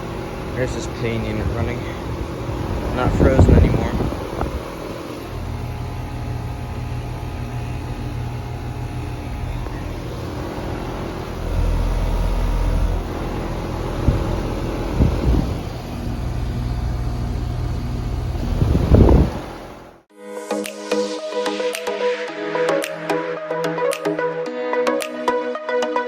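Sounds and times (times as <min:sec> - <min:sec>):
low rumbles: 0:00.0 - 0:19.9
fan airflow: 0:00.0 - 0:20.0
compressor hum: 0:00.0 - 0:20.1.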